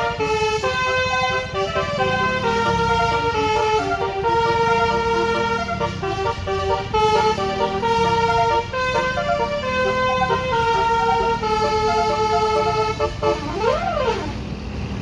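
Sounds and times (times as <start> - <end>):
bus horn playing a tune: 0.0 - 14.6.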